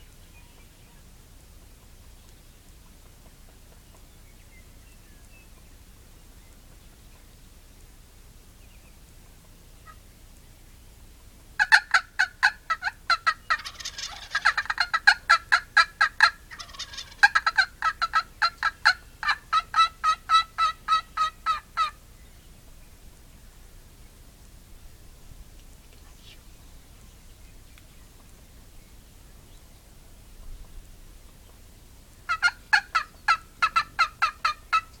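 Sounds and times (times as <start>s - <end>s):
turkeys gobbling: 11.6s - 22.1s, 32.3s - 35.0s.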